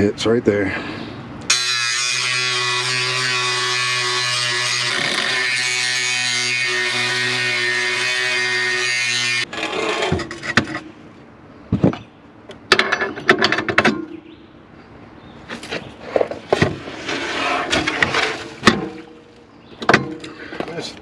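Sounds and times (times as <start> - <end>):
metal hitch clanking and scraping: 1.5 - 11.1, 11.7 - 14.3, 15.5 - 21.0.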